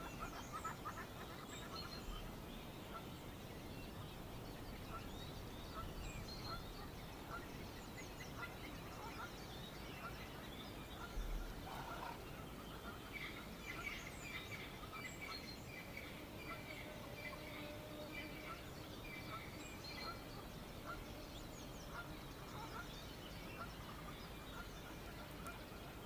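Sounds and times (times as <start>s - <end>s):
birds chirping and calling: 8.2s - 26.0s.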